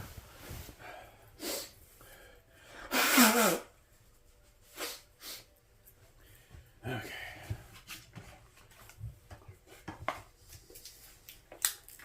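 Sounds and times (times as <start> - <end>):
quiet breath-like sounds: 0.0 - 2.9, 3.8 - 8.1
person sneezing: 2.9 - 3.7.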